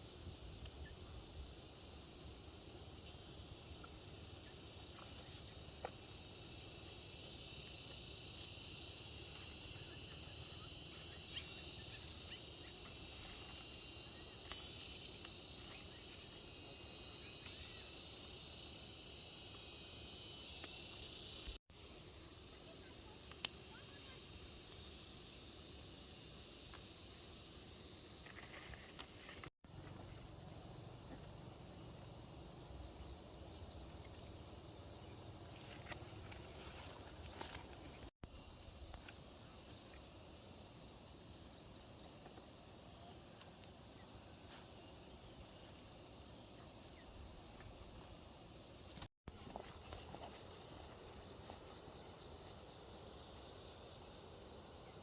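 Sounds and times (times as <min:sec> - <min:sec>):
insects chirring: 0:00.0 - 0:55.0.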